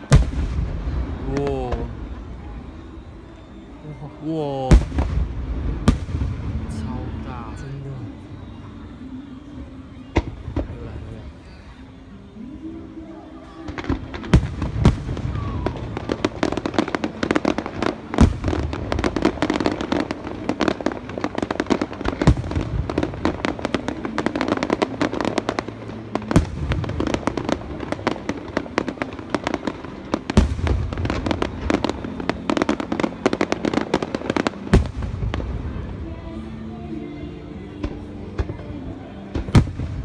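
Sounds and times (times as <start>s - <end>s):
deep fireworks boom: 0.0s - 2.8s, 4.7s - 7.7s, 13.7s - 36.0s, 39.3s - 40.0s
fireworks crackling and popping: 0.0s - 8.9s, 13.4s - 40.0s.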